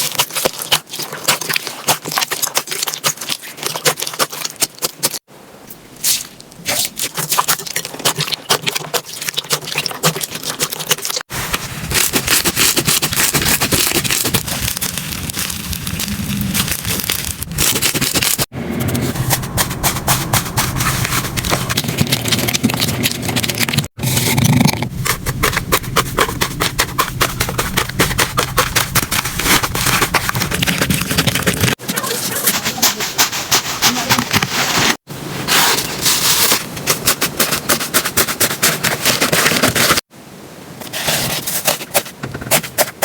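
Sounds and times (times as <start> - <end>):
slime crackling and popping: 11.9 - 18.5.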